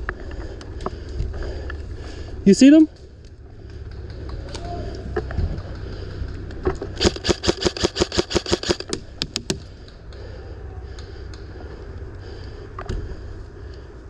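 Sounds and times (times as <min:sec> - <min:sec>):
airsoft gun rapid fire: 0:07.0 - 0:09.0.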